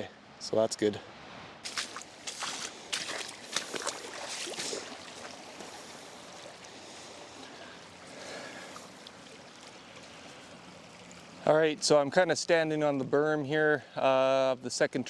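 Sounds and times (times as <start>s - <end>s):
floodwater rushing down a trench: 1.6s - 11.4s.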